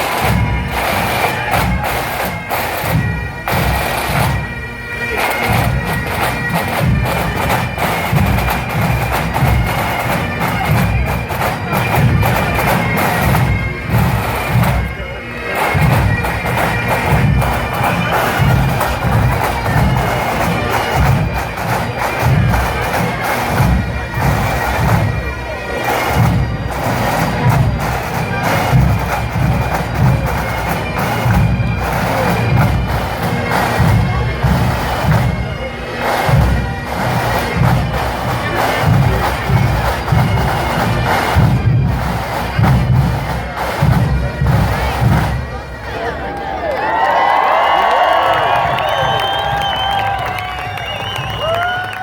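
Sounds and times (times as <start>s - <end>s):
drumbeat: 0.0s - 4.5s, 5.2s - 45.5s, 47.0s - 52.0s
bagpipes playing: 0.0s - 46.7s.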